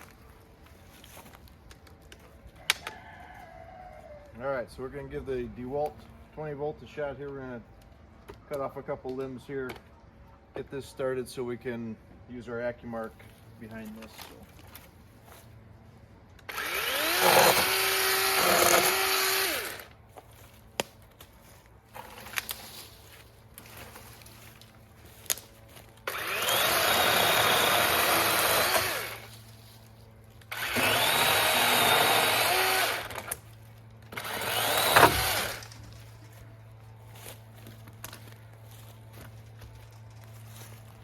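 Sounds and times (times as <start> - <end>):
battery chainsaw cutting: 16.5 - 19.9, 26.0 - 29.3, 30.4 - 33.4, 34.1 - 35.8.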